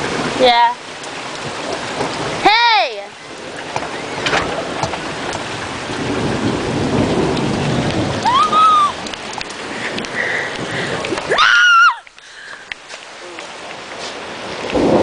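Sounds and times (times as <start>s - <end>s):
heavy rain pouring: 0.0s - 15.0s
thunder rumbling: 1.2s - 11.7s, 14.4s - 15.0s.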